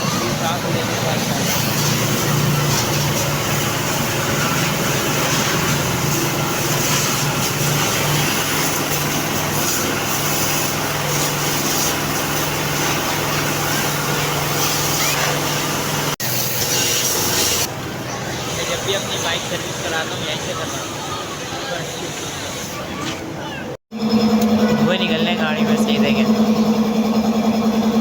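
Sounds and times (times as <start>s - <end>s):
pressure washer motor hum: 0.0s - 22.6s, 24.0s - 28.0s
water jet hissing: 0.0s - 22.8s.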